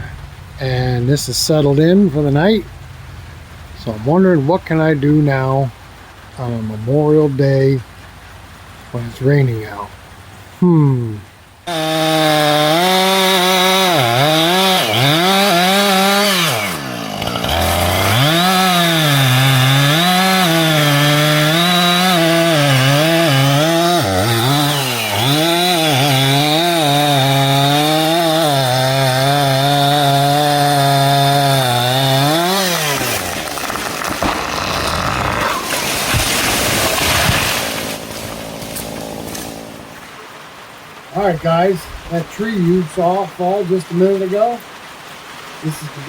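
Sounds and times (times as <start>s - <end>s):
chainsaw cutting wood: 11.7s - 40.0s.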